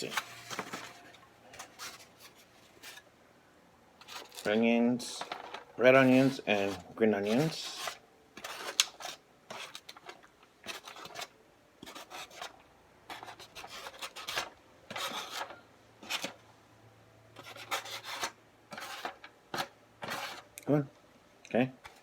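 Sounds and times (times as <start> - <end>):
onions scraped into bowl: 6.0 - 9.9.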